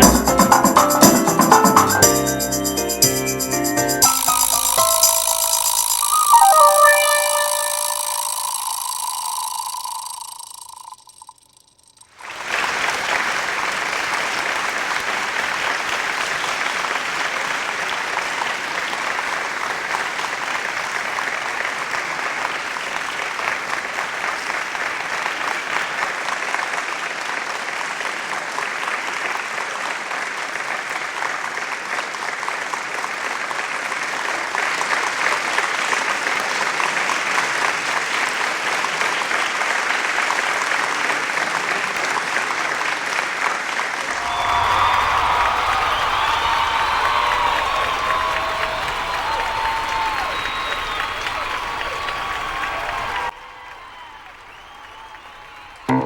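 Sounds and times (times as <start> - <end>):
crowd applause: 12.2 - 56.0.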